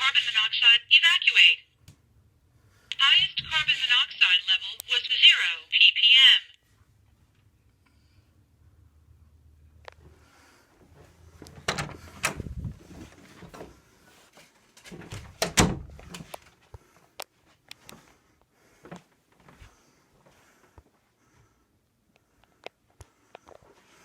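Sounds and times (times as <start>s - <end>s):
knocking and rattling handling noise: 10.9s - 13.8s.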